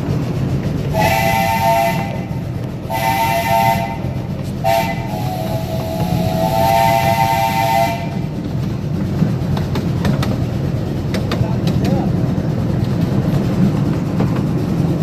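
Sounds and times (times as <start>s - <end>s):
train running rumble: 0.0s - 15.0s
steam locomotive chime whistle: 0.9s - 8.4s.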